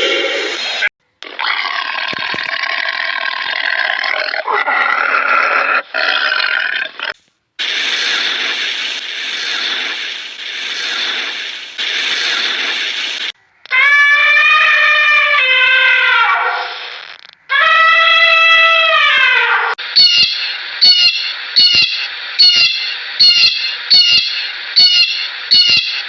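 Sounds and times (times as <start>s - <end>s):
wavering animal calls: 13.4s - 26.0s.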